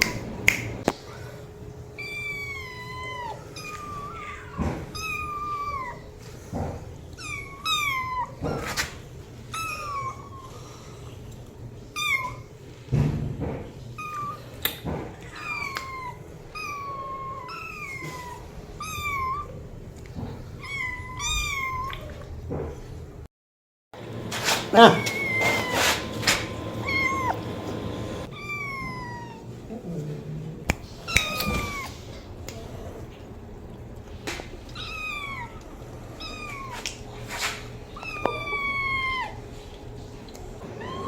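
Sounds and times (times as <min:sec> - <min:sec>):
cat meowing: 0:02.0 - 0:06.1, 0:07.2 - 0:08.8, 0:15.2 - 0:19.6, 0:20.6 - 0:22.1, 0:24.7 - 0:26.1, 0:26.8 - 0:27.4, 0:28.2 - 0:29.5, 0:31.0 - 0:32.1, 0:34.7 - 0:36.9, 0:38.0 - 0:39.4, 0:40.6 - 0:41.0.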